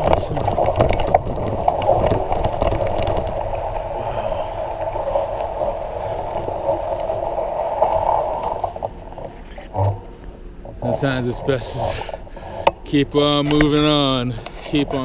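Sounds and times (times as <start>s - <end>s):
snow crackling: 0.0s - 9.9s
bicycle tyres rolling through snow: 0.0s - 15.0s.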